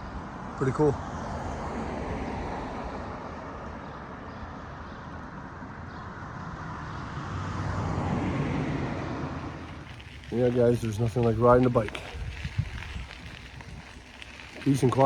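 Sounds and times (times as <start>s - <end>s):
car engines: 0.0s - 15.0s
tyre noise: 9.4s - 15.0s.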